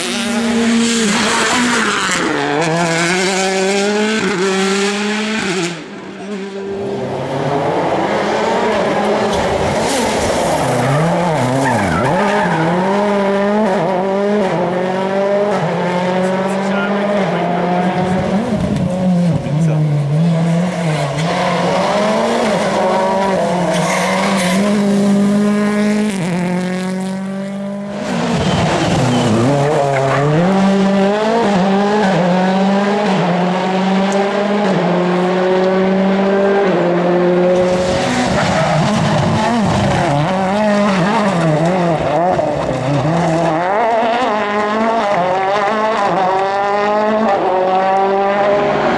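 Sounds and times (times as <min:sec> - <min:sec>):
rally car engines revving: 0:00.0 - 0:48.9.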